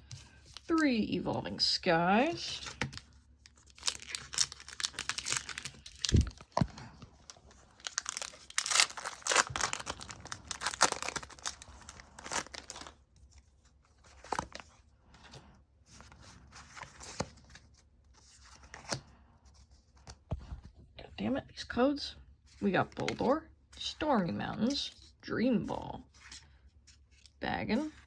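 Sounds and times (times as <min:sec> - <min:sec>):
cards rustling and clicking: 0:02.2 - 0:15.4, 0:16.0 - 0:20.6
foil pack tearing and crinkling: 0:03.6 - 0:13.0.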